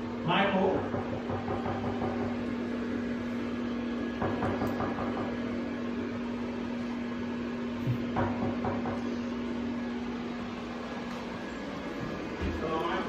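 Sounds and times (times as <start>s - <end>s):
knocks: 0.8s - 2.4s, 7.9s - 9.1s.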